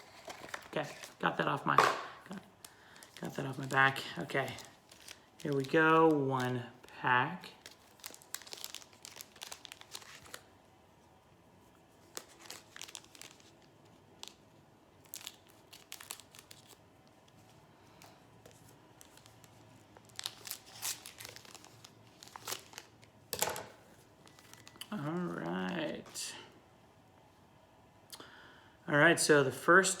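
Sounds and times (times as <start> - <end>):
wrapper tearing and crinkling: 2.8 - 10.5, 12.0 - 14.4, 15.0 - 17.2, 18.5 - 23.1, 24.2 - 26.0.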